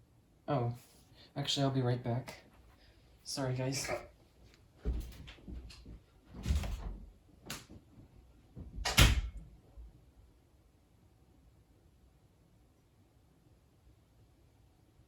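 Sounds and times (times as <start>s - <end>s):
knocks and thumps of movement: 4.8s - 9.3s.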